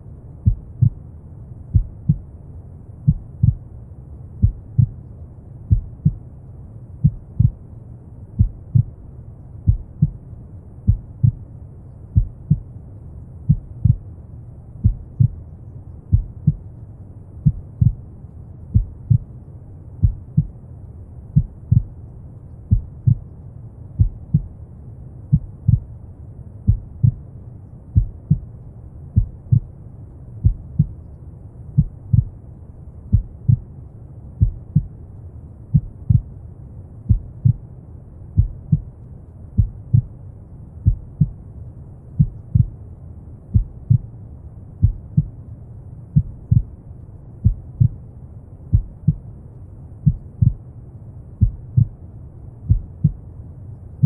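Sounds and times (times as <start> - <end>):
low noise rumble: 0.0 - 54.0
heartbeat thumps: 0.4 - 1.0, 1.7 - 2.3, 3.1 - 3.6, 4.4 - 5.0, 5.7 - 6.2, 7.0 - 7.6, 8.4 - 8.9, 9.7 - 10.2, 10.9 - 11.4, 12.2 - 12.7, 13.5 - 14.0, 14.8 - 15.4, 16.1 - 16.7, 17.4 - 18.0, 18.7 - 19.3, 20.0 - 20.5, 21.4 - 22.0, 22.7 - 23.2, 24.0 - 24.5, 25.3 - 25.9, 26.7 - 27.2, 28.0 - 28.5, 29.2 - 29.7, 30.4 - 31.0, 31.8 - 32.4, 33.1 - 33.7, 34.4 - 34.9, 35.7 - 36.3, 37.1 - 37.6, 38.4 - 38.9, 39.6 - 40.1, 40.8 - 41.4, 42.2 - 42.8, 43.5 - 44.1, 44.8 - 45.4, 46.2 - 46.7, 47.4 - 48.0, 48.7 - 49.2, 50.0 - 50.6, 51.4 - 52.0, 52.7 - 53.2.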